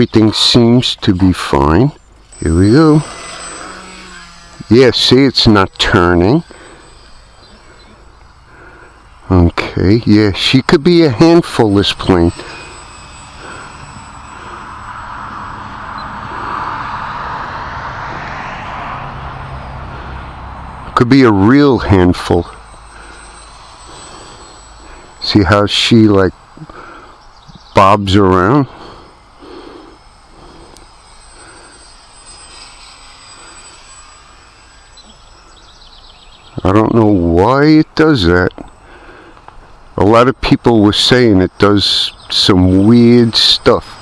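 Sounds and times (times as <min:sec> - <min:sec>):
model plane motor whining: 0:00.0 - 0:44.0.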